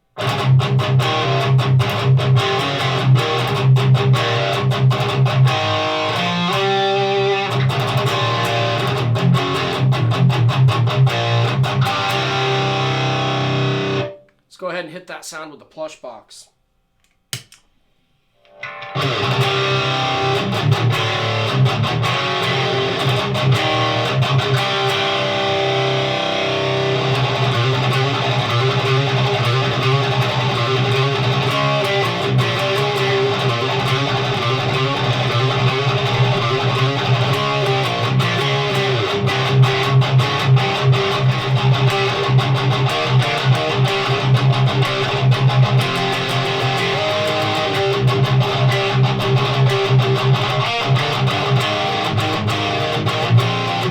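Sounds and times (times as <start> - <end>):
overdriven electric guitar riff: 0.1 - 14.3, 18.4 - 53.9.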